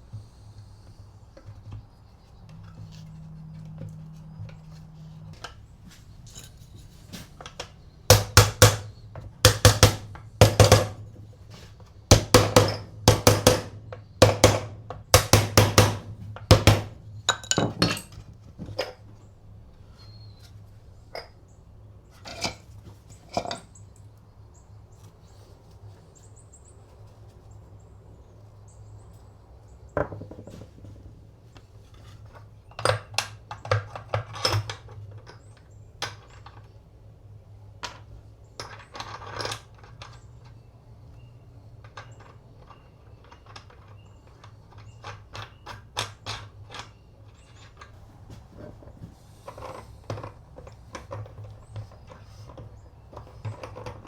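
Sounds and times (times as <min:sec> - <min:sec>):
sharp knocks: 0:12.1 - 0:17.0.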